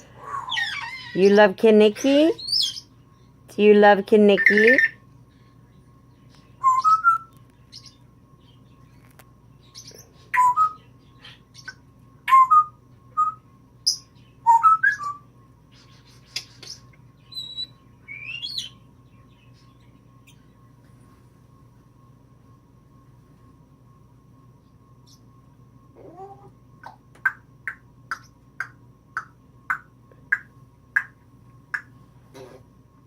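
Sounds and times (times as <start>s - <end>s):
parrot chirps and whistles: 0.2s - 1.2s, 6.6s - 8.0s, 9.8s - 15.2s, 16.4s - 18.8s.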